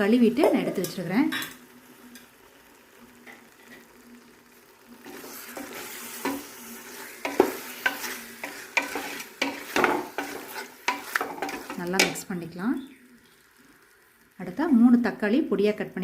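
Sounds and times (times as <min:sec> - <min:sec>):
chicken sizzling in hot oil: 0:00.0 - 0:16.0
spoon stirring and knocking pot: 0:07.2 - 0:12.3.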